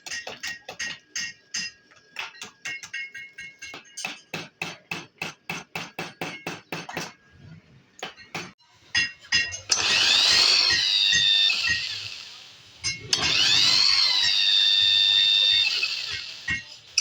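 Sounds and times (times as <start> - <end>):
power tool whirring: 9.7 - 17.0.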